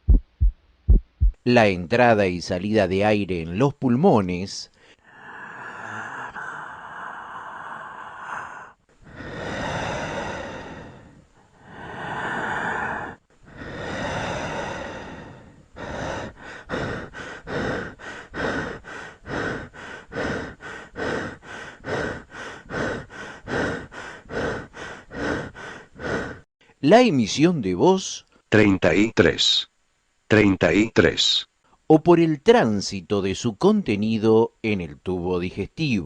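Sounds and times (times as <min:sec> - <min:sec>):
person breathing: 0:04.7 - 0:26.8.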